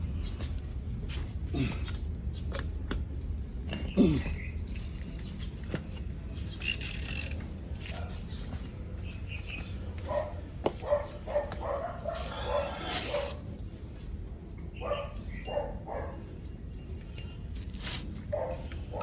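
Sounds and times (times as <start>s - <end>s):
dog barking: 10.0s - 13.4s, 14.8s - 16.3s, 18.3s - 19.0s.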